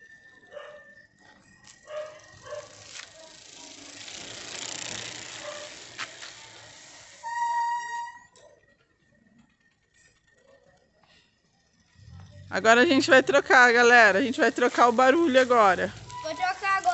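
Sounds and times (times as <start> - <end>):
cicada buzzing: 2.2 - 7.9.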